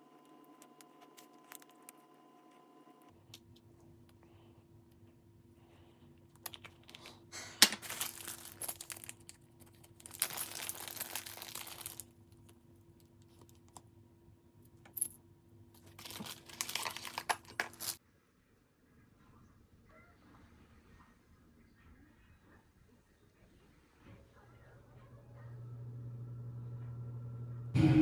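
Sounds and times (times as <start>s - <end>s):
plastic rustling and crinkling: 6.3s - 12.6s, 15.8s - 18.0s.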